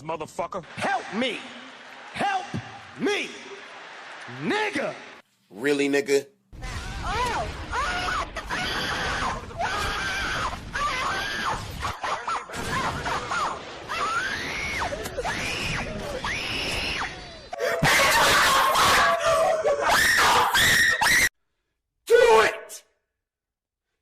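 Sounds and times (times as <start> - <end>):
person screaming: 17.6 - 21.0.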